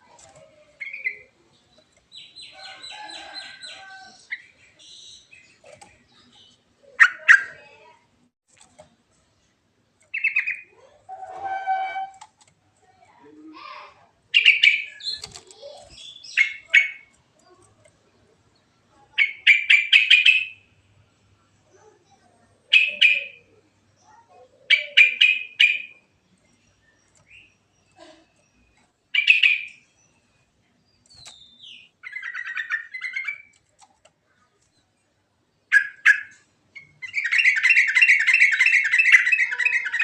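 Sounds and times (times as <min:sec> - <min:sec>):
bulbul singing: 0:00.6 - 0:07.7, 0:10.1 - 0:10.8, 0:14.3 - 0:17.2, 0:19.1 - 0:20.7, 0:22.7 - 0:33.6.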